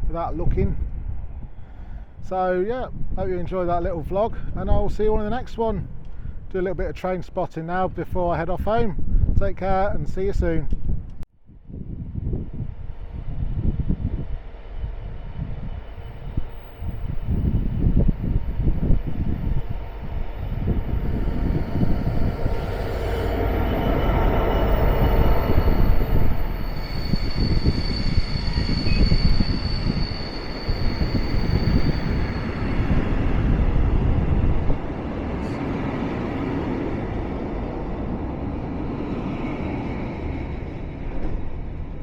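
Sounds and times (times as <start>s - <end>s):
train rushing past: 12.2s - 42.0s
high whine: 16.0s - 38.6s.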